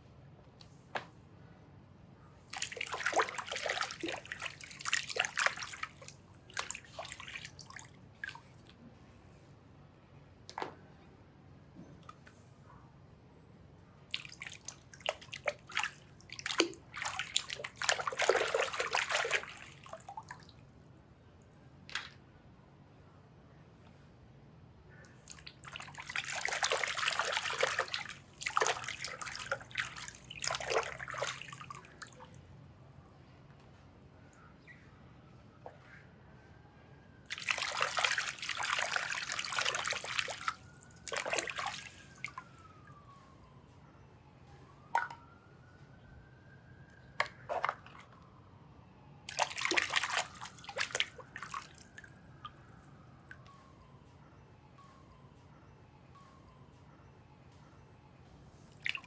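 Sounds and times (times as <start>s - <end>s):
water sloshing and splashing: 2.5s - 8.7s, 14.1s - 20.6s, 25.2s - 32.4s, 37.3s - 42.8s, 47.2s - 48.3s, 49.3s - 52.6s, 58.7s - 59.0s.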